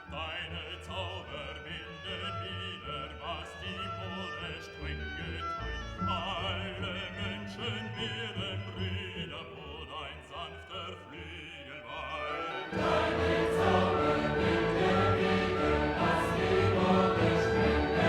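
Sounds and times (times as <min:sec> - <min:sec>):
operatic singing: 0:06.1 - 0:18.0
choir singing: 0:11.9 - 0:18.0
orchestra playing: 0:12.2 - 0:18.0.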